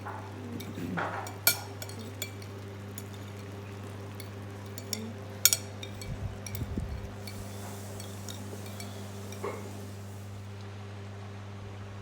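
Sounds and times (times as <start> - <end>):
dishes and utensils clinking: 0.0 - 10.2.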